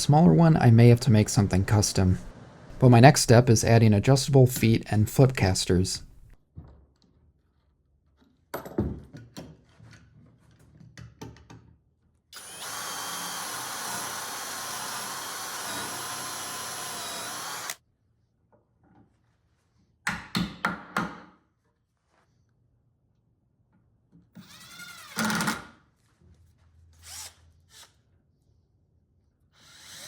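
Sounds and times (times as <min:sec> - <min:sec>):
power drill driving screws: 0:12.4 - 0:17.8, 0:24.4 - 0:25.6, 0:27.0 - 0:27.9, 0:29.6 - 0:30.0.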